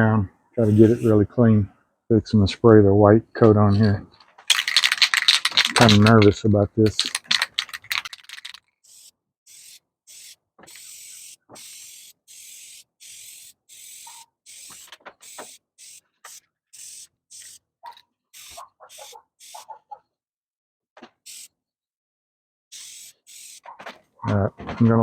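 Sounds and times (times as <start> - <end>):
aerosol paint can spraying: 0.6 - 1.1, 4.5 - 6.3, 6.9 - 17.6, 18.4 - 19.7, 21.3 - 21.5, 22.7 - 23.7.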